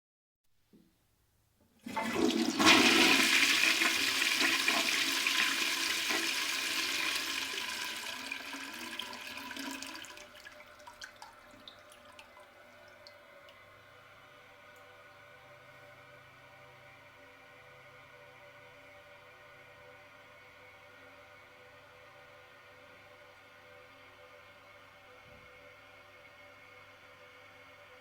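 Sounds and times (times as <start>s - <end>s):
toilet flushing: 1.8s - 13.5s
water trickles and drips: 9.0s - 13.6s.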